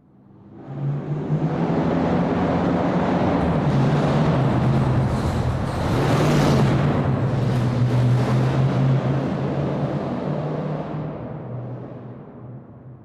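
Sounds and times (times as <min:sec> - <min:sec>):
car engine rumbling: 0:02.4 - 0:09.8.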